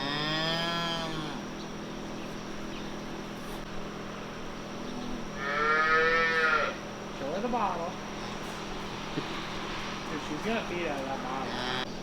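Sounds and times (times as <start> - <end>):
calf mooing: 0.0 - 1.5, 5.4 - 6.8, 11.4 - 11.8
low background hum: 0.0 - 12.0.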